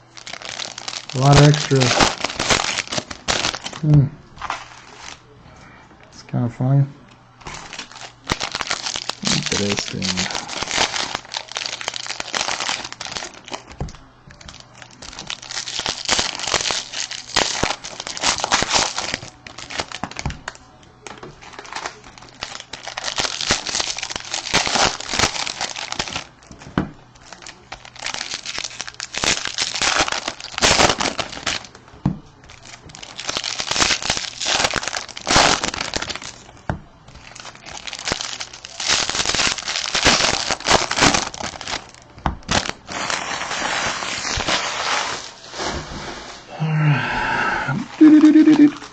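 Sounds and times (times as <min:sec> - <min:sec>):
wrappers crinkling and tearing: 0:00.0 - 0:05.3, 0:07.4 - 0:46.5, 0:47.8 - 0:48.9
cards being handled: 0:07.4 - 0:15.4.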